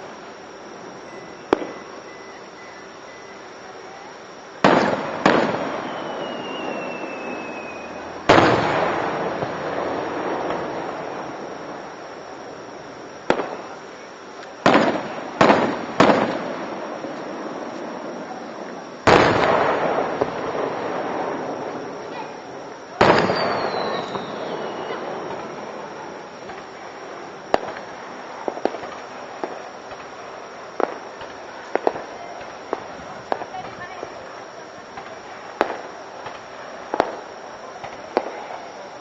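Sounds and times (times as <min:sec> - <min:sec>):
falling firework whistle: 0:00.0 - 0:39.0
firework bangs with echo: 0:04.6 - 0:12.0, 0:13.2 - 0:13.8, 0:14.6 - 0:26.8, 0:27.4 - 0:30.2.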